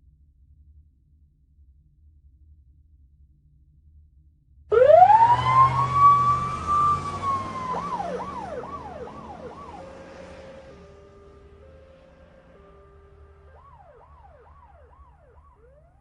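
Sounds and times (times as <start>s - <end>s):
siren wailing and swooping: 4.7s - 16.0s.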